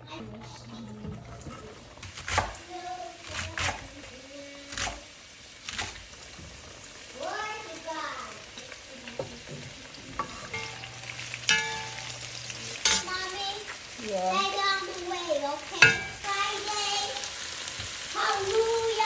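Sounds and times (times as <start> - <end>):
noodles sizzling in a pan: 0.0 - 19.0
utensil clanking on a pan: 8.5 - 13.8, 15.7 - 16.6.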